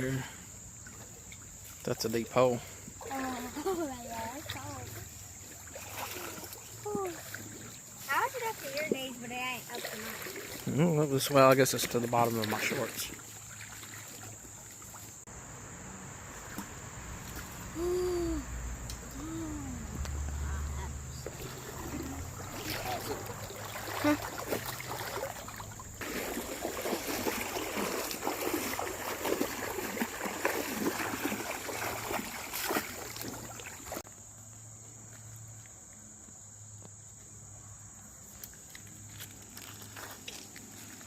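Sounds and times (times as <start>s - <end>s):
wading through water: 0.0s - 15.2s, 20.2s - 34.0s
high insect drone: 0.0s - 41.0s.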